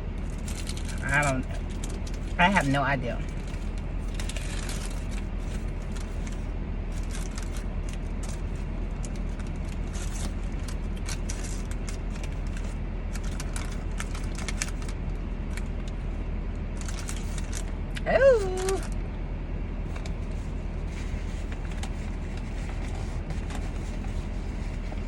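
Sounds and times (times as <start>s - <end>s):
car idling hum: 0.0s - 25.0s
paper packaging crinkling: 0.2s - 2.7s, 3.3s - 16.0s, 16.8s - 17.8s.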